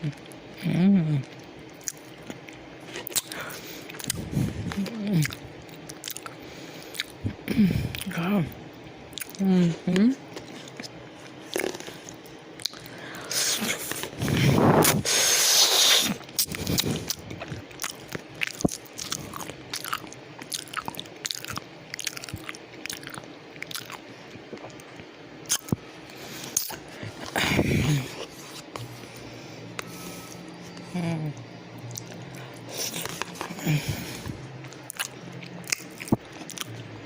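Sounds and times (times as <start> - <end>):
person chewing wetly: 1.2 - 8.2, 9.1 - 9.4, 10.4 - 14.1, 16.0 - 28.8, 34.6 - 36.8.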